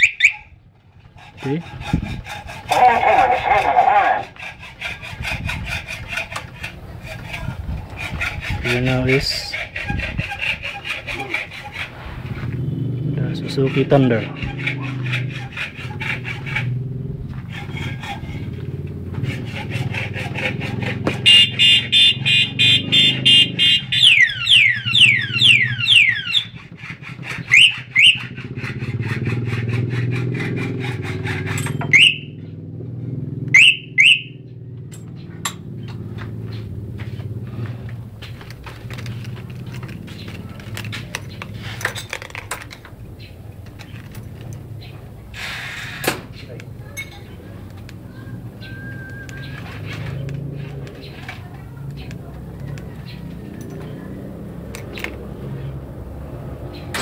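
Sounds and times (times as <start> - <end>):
motorcycle alarm beeping and sirens: 0.0 - 0.5, 21.2 - 26.6, 27.5 - 28.2, 31.8 - 32.4, 33.5 - 34.6
motorcycle engine hum: 5.0 - 57.0.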